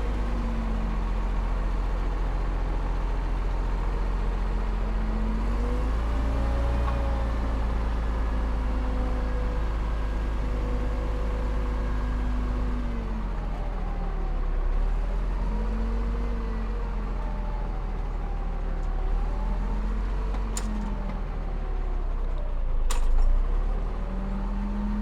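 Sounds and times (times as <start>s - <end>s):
heavy diesel machinery engine: 0.0s - 25.0s
sharp metallic clicks: 20.3s - 21.1s.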